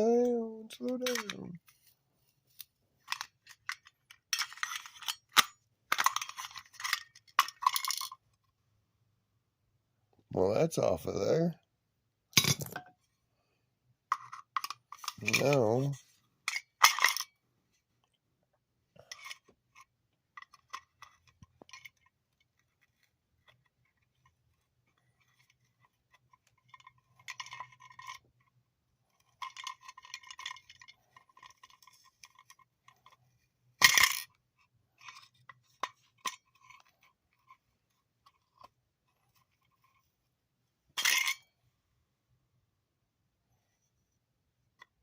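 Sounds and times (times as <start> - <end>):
metal tools clinking and scraping: 0.8 - 1.6, 3.1 - 8.2, 41.0 - 41.5.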